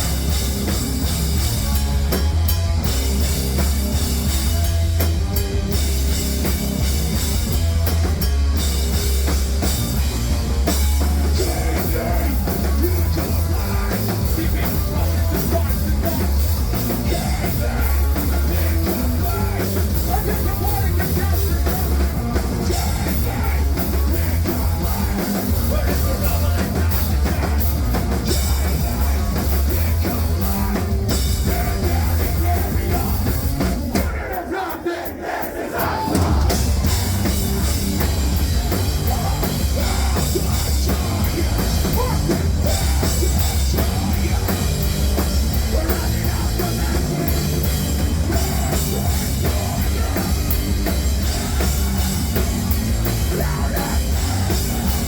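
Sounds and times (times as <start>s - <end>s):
heavy bass: 0.0s - 34.6s, 35.2s - 55.0s
distorted guitars: 0.0s - 55.0s
pounding drums: 0.0s - 55.0s
shouted vocals: 11.3s - 38.1s.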